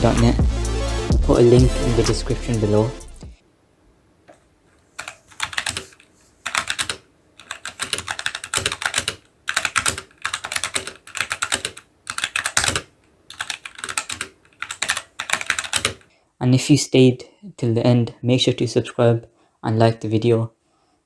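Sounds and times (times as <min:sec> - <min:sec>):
mechanical keyboard typing: 0:05.0 - 0:16.1.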